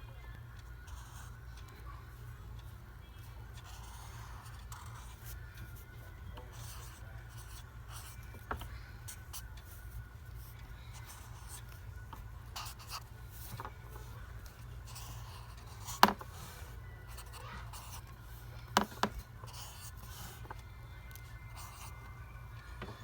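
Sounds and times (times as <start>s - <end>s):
pen scratching while writing: 3.6s - 5.4s, 6.5s - 8.2s, 11.0s - 11.8s, 12.6s - 13.7s, 14.9s - 18.0s, 18.8s - 20.5s, 21.6s - 21.9s.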